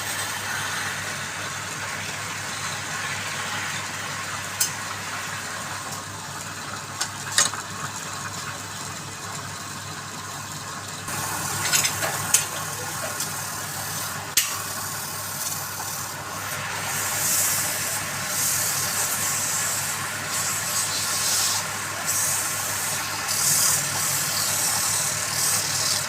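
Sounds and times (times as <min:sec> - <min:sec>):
wood lathe running: 0:10.8 - 0:26.0
tool cutting spinning wood: 0:11.1 - 0:26.0.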